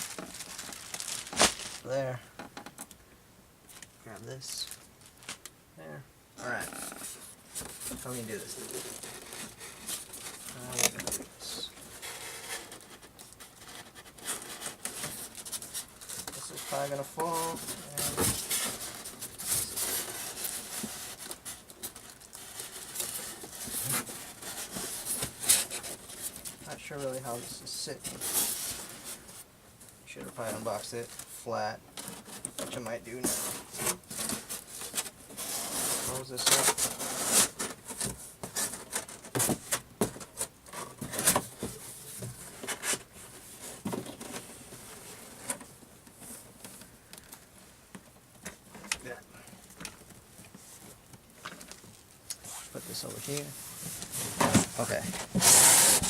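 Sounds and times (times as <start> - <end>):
cardboard box rustling and scraping: 6.6 - 21.6, 52.4 - 56.0
cardboard box scraping and rustling: 52.4 - 56.0.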